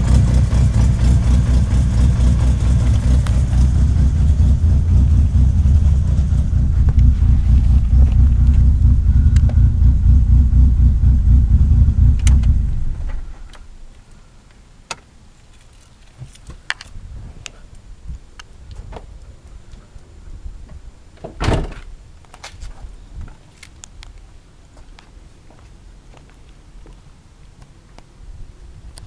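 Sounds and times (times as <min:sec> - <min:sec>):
car engine running: 0:00.0 - 0:13.6.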